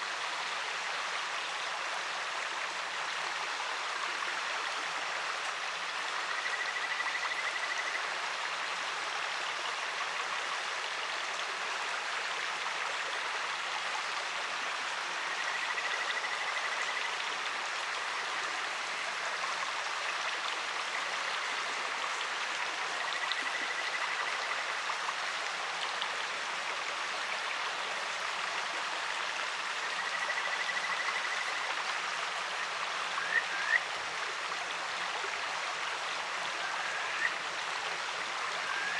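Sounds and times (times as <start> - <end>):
frogs trilling: 29.8 - 31.7, 32.6 - 33.9, 36.6 - 37.4, 38.6 - 38.9.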